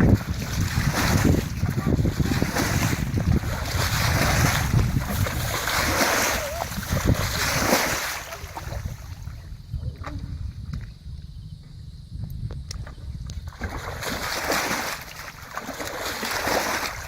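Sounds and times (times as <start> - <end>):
rushing splashing water: 0.0 - 9.3, 13.6 - 17.0
wind buffeting microphone: 0.0 - 15.4.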